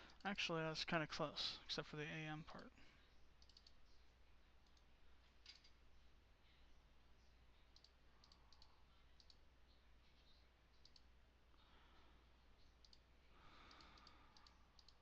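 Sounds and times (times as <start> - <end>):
computer mouse clicks: 3.4 - 3.8, 4.6 - 5.8, 7.7 - 9.4, 10.2 - 11.1, 12.6 - 15.0.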